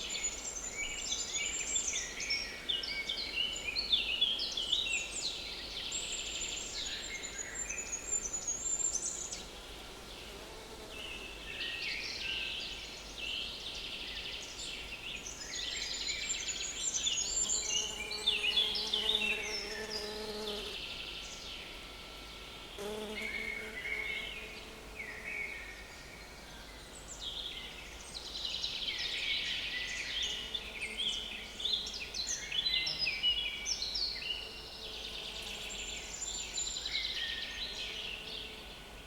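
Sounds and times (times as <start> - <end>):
small birds singing: 0.0 - 9.6, 10.2 - 39.0
fly buzzing: 22.8 - 23.8.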